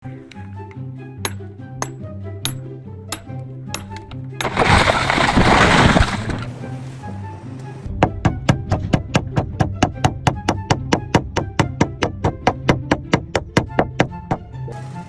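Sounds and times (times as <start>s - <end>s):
background music: 0.0s - 15.0s.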